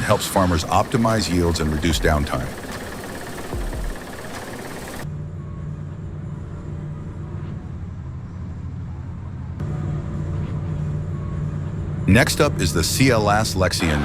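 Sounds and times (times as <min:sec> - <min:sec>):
combine harvester engine humming: 0:00.5 - 0:05.0.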